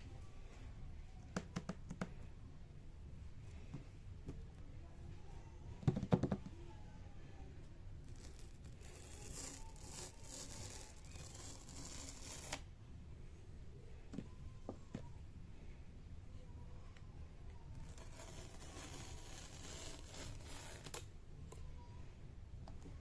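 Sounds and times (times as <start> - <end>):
packaging tearing: 8.0 - 12.6.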